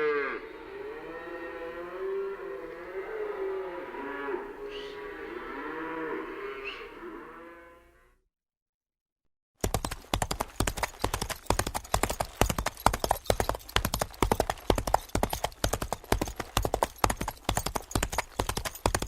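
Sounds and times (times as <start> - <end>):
horse hooves clip-clopping: 9.6 - 19.0.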